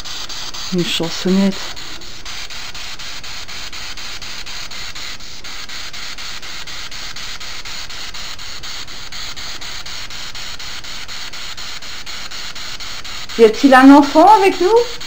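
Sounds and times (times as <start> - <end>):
static hiss: 0.0 - 15.0.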